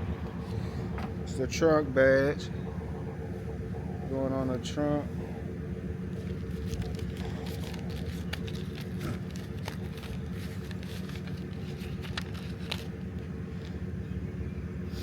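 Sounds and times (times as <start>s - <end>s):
low mechanical drone: 0.0s - 15.0s
parcel packaging crackling: 6.1s - 14.0s.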